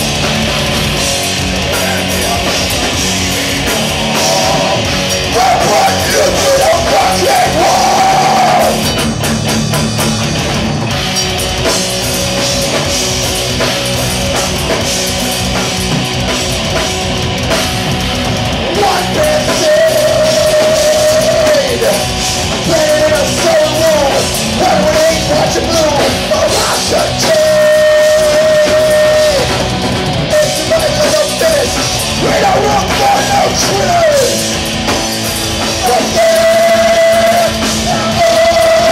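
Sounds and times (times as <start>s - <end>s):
drums: 0.0s - 38.9s
heavy rock band playing: 0.0s - 38.9s
singer holding long notes: 1.6s - 8.9s, 18.6s - 34.5s, 35.8s - 38.9s.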